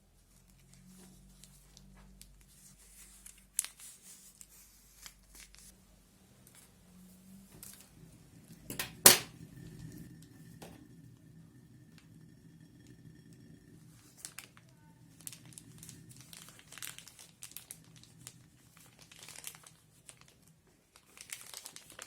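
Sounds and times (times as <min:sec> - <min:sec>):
plastic crinkling: 0:15.2 - 0:22.0
plastic rustles and clicks: 0:21.0 - 0:22.0.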